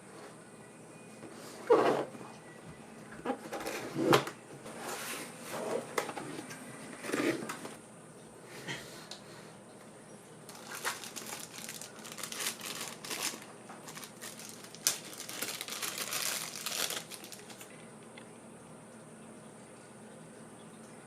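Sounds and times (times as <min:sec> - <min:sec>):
packaging crinkling: 0:10.5 - 0:17.7.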